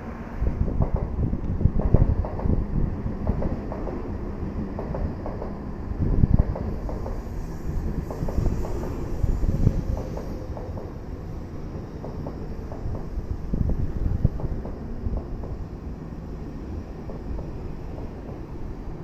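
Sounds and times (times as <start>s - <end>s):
train low rumble: 0.0s - 19.0s.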